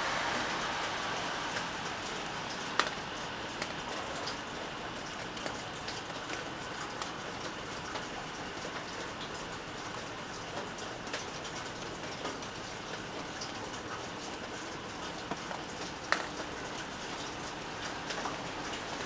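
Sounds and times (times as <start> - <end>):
steady rain: 0.0 - 19.0
drips tapping on a surface: 14.9 - 19.0.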